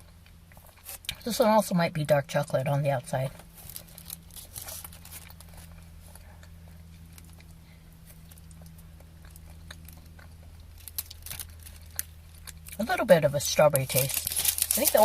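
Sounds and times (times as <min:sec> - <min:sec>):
person chewing: 0:00.0 - 0:01.2, 0:03.4 - 0:12.8
low hum: 0:00.0 - 0:15.0.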